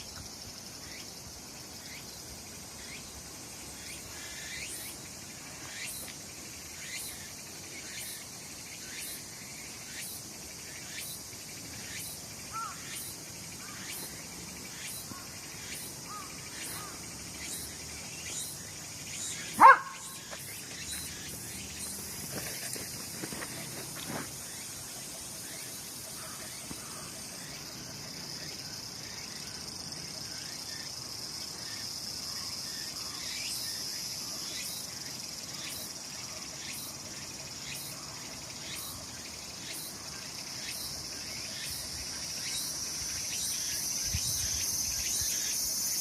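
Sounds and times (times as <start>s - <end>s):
cicadas buzzing in chorus: 0.0s - 46.0s
short loud bark: 19.6s - 20.1s.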